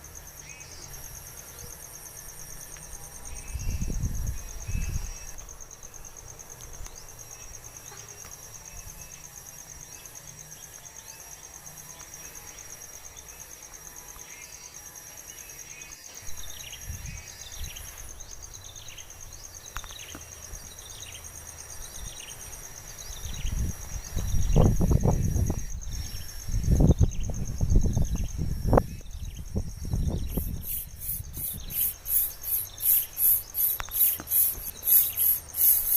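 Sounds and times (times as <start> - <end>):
crickets trilling: 0.0 - 35.9
short falling chirps: 30.3 - 35.9.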